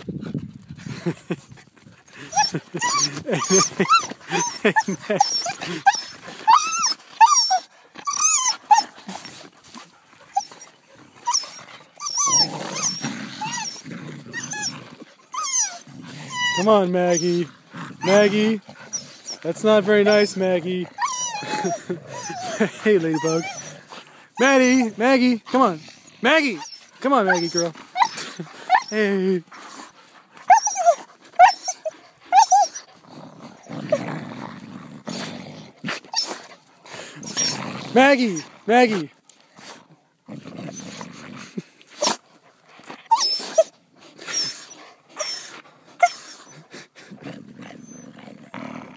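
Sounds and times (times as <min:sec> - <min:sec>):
dog yelping and whining: 0:02.0 - 0:33.0, 0:35.8 - 0:39.0, 0:42.0 - 0:42.2, 0:42.8 - 0:46.7, 0:47.6 - 0:48.2
dog growling: 0:02.1 - 0:29.7, 0:30.5 - 0:39.0, 0:39.8 - 0:42.3, 0:44.3 - 0:48.9
dog yipping: 0:11.2 - 0:13.8, 0:30.5 - 0:32.8.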